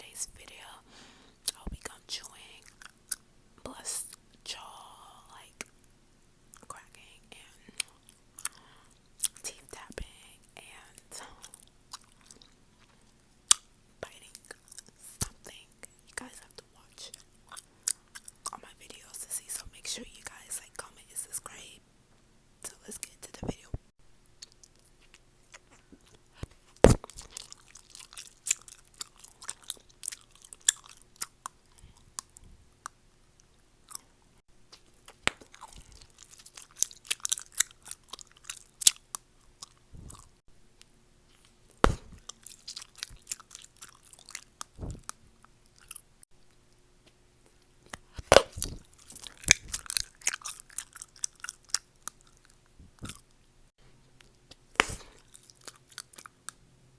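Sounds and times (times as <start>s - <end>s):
gum chewing: 2.6s - 3.2s, 7.7s - 9.4s, 11.0s - 13.7s, 17.1s - 18.6s, 24.4s - 34.1s, 34.7s - 40.4s, 41.3s - 53.4s, 54.2s - 56.6s
loud sharp gum snaps: 26.8s - 27.4s, 35.1s - 35.5s, 41.8s - 42.3s, 48.2s - 48.8s, 54.5s - 55.3s.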